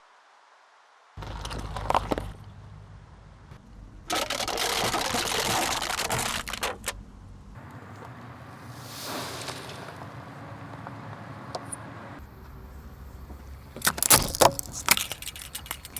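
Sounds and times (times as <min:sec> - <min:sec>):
sharp cracks: 0:07.6 - 0:12.2, 0:13.8 - 0:15.9
tyre crunching objects: 0:13.2 - 0:15.9.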